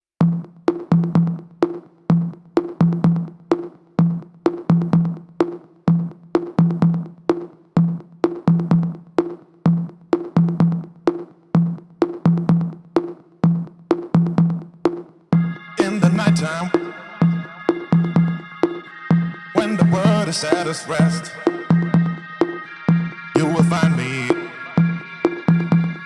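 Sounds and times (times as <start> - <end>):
drum machine beat: 0.2 - 26.0
punchy bass notes: 15.4 - 26.0.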